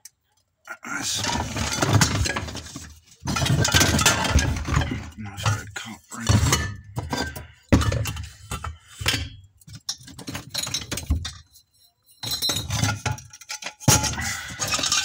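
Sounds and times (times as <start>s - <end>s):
scrap metal clinking together: 10.0s - 15.0s.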